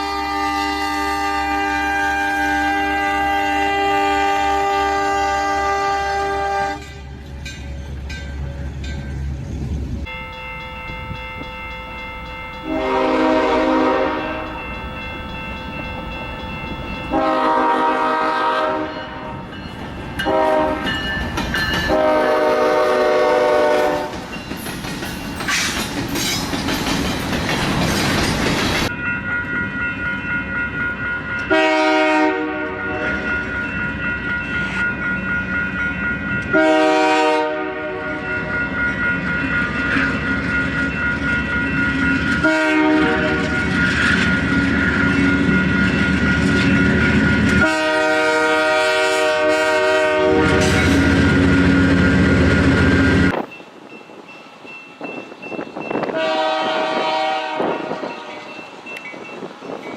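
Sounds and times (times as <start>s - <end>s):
locomotive air horn blasts: 0.0s - 7.0s, 12.6s - 14.6s, 17.1s - 19.4s, 20.2s - 21.0s, 21.9s - 24.3s, 31.5s - 33.3s, 36.5s - 38.2s, 42.4s - 43.6s, 47.6s - 52.0s, 56.0s - 58.5s
train passing with loud rush: 0.0s - 59.9s
wheels clacking over rail joints: 19.4s - 22.0s, 24.0s - 28.9s.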